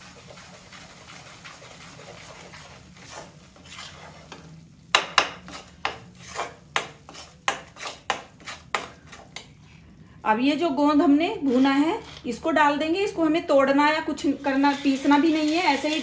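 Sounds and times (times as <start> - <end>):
spatula scraping a pan: 0.0 - 9.5, 11.3 - 12.5, 14.2 - 16.0.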